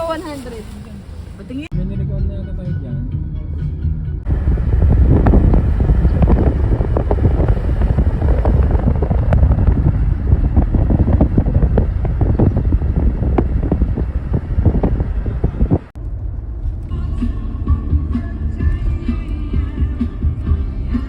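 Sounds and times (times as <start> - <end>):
moving vehicle rumble: 0.0 - 21.0
wind buffeting microphone: 4.2 - 17.0.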